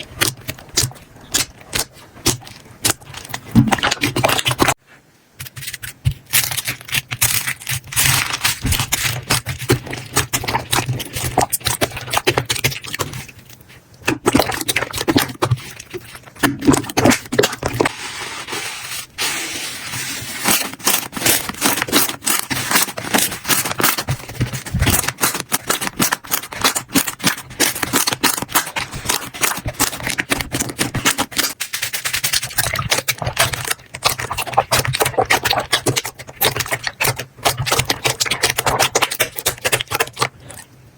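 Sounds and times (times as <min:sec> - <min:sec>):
slime squishing and popping: 0:14.0 - 0:17.9, 0:20.4 - 0:40.6.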